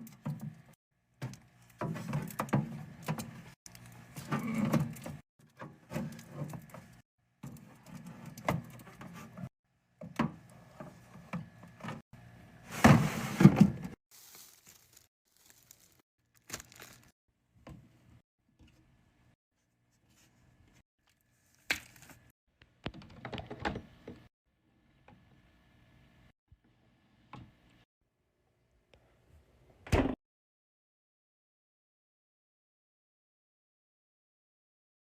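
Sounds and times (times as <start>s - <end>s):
drinks and snacks being handled: 12.7s - 17.1s.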